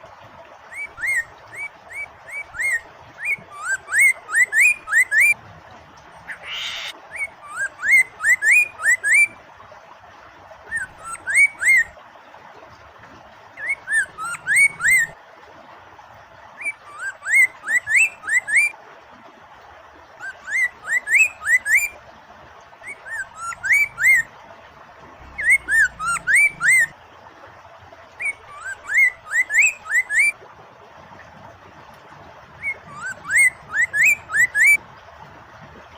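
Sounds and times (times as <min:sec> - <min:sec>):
running water hiss: 0:00.0 - 0:35.9
bird singing whistled notes: 0:00.8 - 0:05.4, 0:06.3 - 0:09.4, 0:13.6 - 0:15.2, 0:16.6 - 0:18.7, 0:20.4 - 0:22.0, 0:22.9 - 0:24.3, 0:25.4 - 0:26.9, 0:28.2 - 0:30.3, 0:32.6 - 0:34.8.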